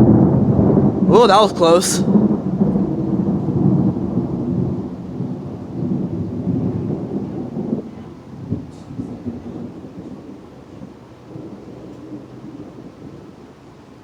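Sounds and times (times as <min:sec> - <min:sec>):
thunder rumbling: 0:02.0 - 0:11.7.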